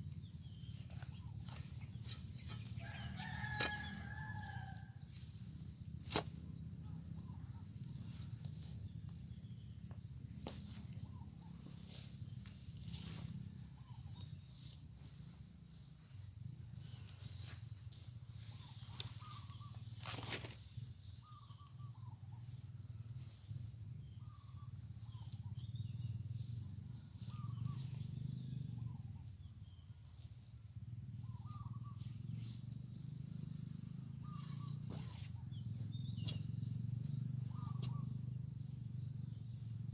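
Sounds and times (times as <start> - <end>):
high insect drone: 0.0 - 39.9
bird chirps: 34.1 - 38.2.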